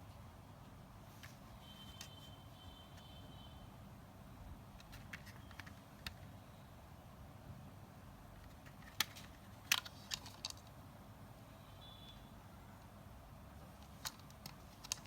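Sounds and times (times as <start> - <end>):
packaging clicks and rustles: 4.8 - 6.3, 8.4 - 10.7, 13.7 - 15.0.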